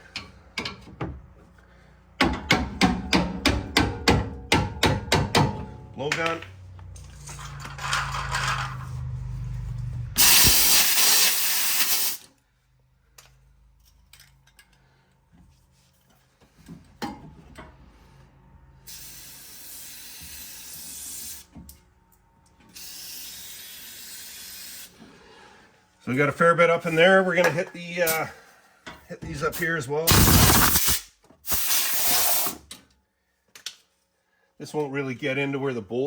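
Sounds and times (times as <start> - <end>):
compressed air blowgun blasting: 10.2 - 12.2, 30.1 - 32.6.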